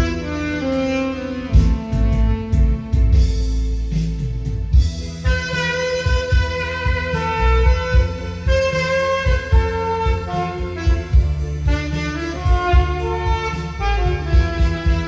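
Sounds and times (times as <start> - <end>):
keyboard backing track: 0.0 - 15.0
saxophone melody: 0.0 - 15.0
steady drum beat: 0.0 - 15.0.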